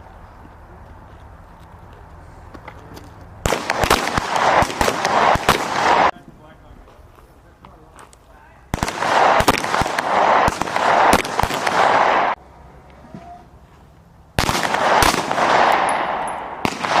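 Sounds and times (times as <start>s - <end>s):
gunshots: 3.4s - 6.1s, 8.7s - 12.4s, 14.4s - 17.0s.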